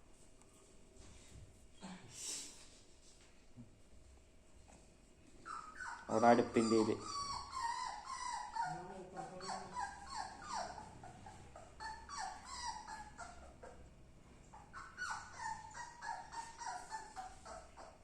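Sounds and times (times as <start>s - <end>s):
puppy whimpering: 5.4s - 13.9s, 14.5s - 18.0s.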